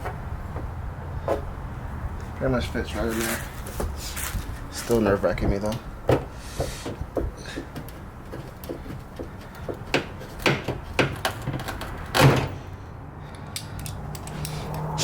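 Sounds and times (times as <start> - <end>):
light clicks and knocks: 5.3 - 12.5.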